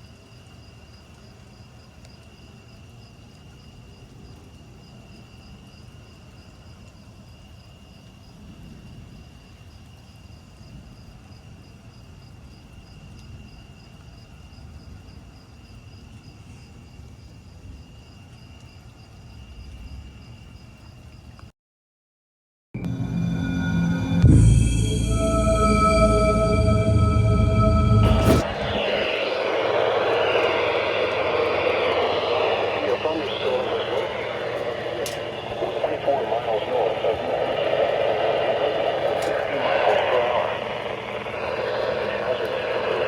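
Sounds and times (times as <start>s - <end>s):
crickets trilling: 0.0s - 21.4s, 28.4s - 43.0s
low uneven rumble: 22.8s - 43.0s.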